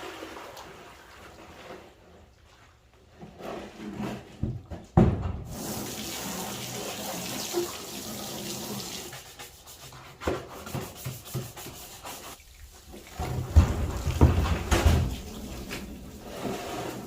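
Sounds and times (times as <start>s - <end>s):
water running from garden hose: 5.5s - 9.7s.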